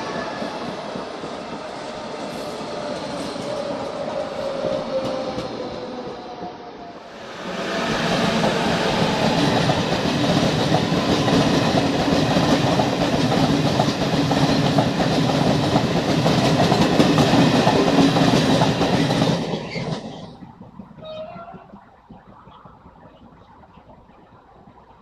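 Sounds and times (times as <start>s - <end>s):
train passing at speed: 0.0s - 25.0s.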